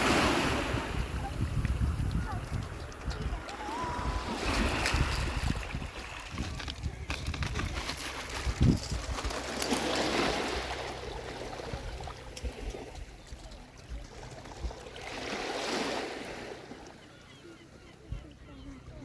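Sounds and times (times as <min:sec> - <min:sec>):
sea waves washing in: 0:00.0 - 0:06.7, 0:09.2 - 0:12.9, 0:14.4 - 0:17.0
wind buffeting microphone: 0:00.0 - 0:15.2.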